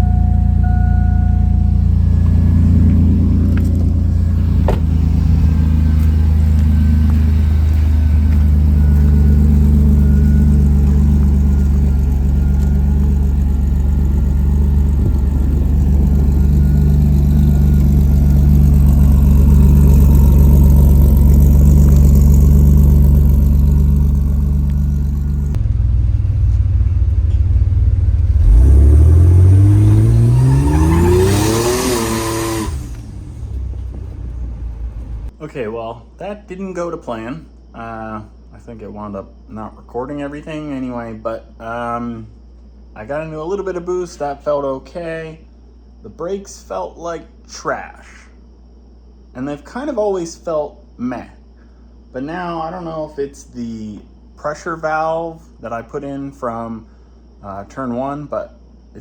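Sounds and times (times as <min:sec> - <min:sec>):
truck engine running and revving: 0:00.0 - 0:35.3.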